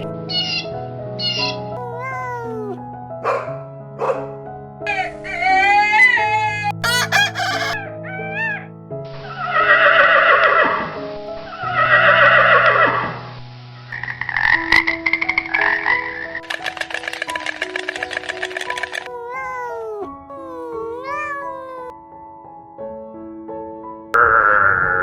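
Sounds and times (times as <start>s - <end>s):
background music: 0.0s - 14.2s
rooster crowing: 6.8s - 7.8s
rapid rattling croak: 13.9s - 19.1s.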